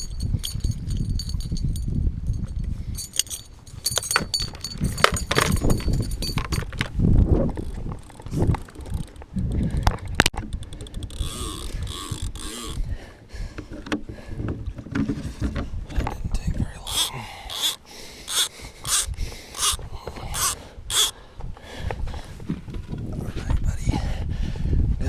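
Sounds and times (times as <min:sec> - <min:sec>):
metallic jingling: 0:00.0 - 0:06.8
gear clicking and knocking: 0:07.5 - 0:12.8, 0:16.8 - 0:21.1.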